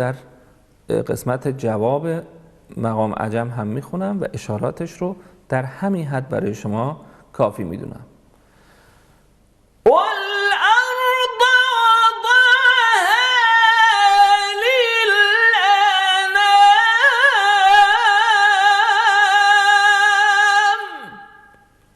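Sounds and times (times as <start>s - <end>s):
person reciting in melodic chant: 0.9s - 8.1s, 9.8s - 21.6s.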